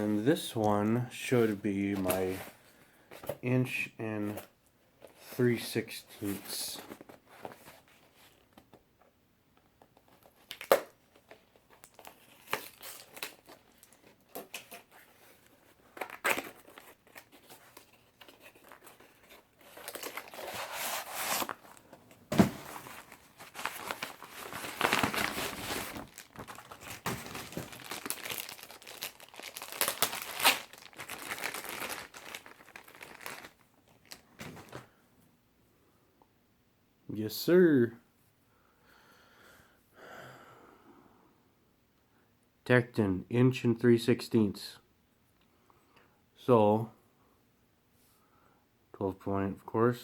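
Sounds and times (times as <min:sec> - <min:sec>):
packaging crinkling and tearing: 0:10.1 - 0:34.8.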